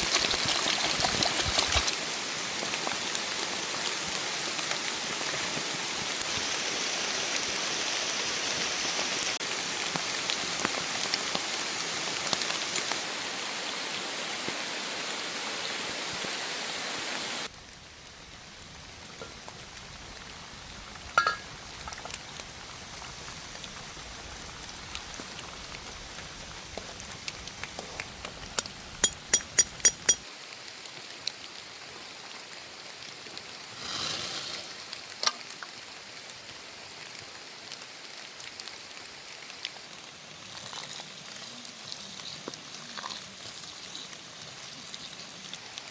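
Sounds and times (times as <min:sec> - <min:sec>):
steady rain falling: 0:01.0 - 0:29.4, 0:30.1 - 0:45.9
sharp ringing clicks: 0:29.0 - 0:30.2.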